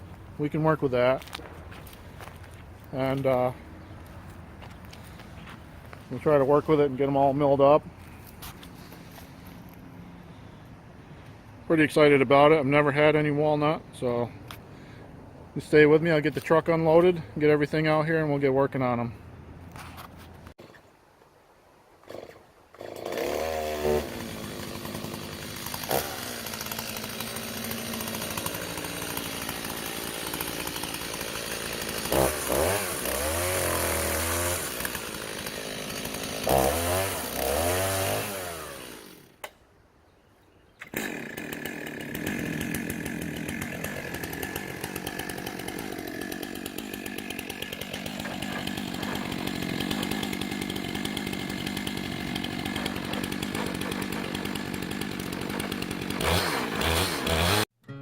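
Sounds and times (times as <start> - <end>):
chainsaw revving: 22.0 - 39.4, 40.8 - 57.7.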